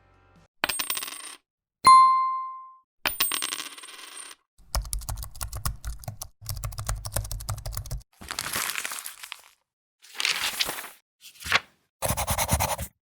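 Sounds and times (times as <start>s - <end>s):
clean ding: 1.9s - 2.8s.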